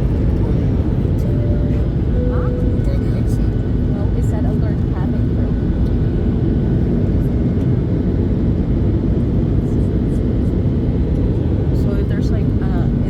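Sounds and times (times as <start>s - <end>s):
airliner cabin rumble: 0.0s - 13.0s.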